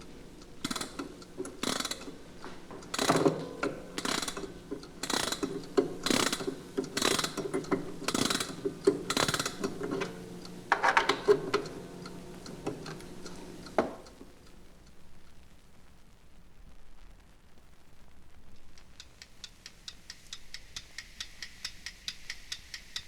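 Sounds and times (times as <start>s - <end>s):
clock key ratcheting: 0.5s - 14.0s.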